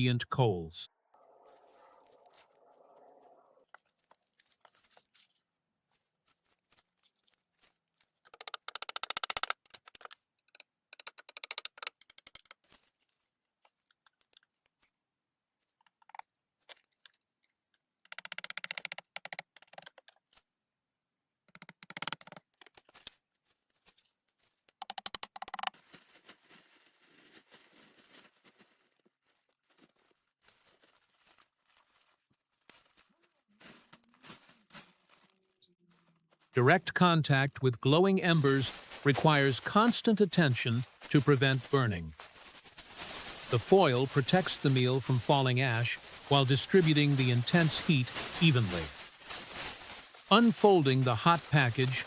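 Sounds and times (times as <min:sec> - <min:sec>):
aluminum foil crinkling: 0:06.1 - 0:08.2, 0:25.8 - 0:36.4, 0:38.5 - 0:39.6, 0:40.8 - 0:52.0.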